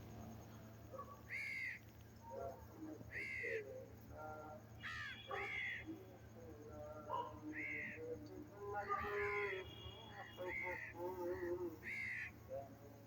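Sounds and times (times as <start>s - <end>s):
crows cawing: 1.3s - 1.8s, 3.1s - 3.6s, 4.8s - 5.9s, 7.5s - 8.0s, 9.0s - 9.7s, 10.5s - 12.4s.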